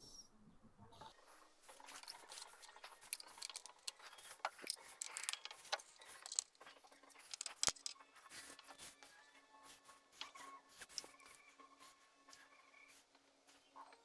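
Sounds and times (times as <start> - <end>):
parts and tools handling noise: 1.7 - 8.8.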